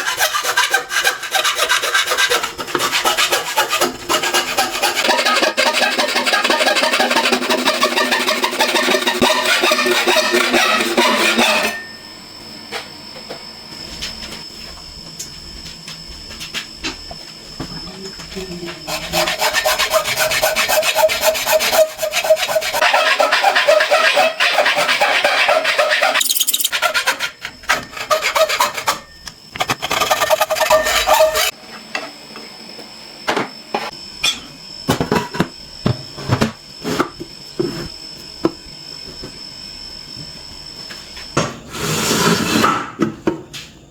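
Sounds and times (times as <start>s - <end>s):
tool rasping a workpiece: 0.0s - 11.7s, 18.9s - 31.5s.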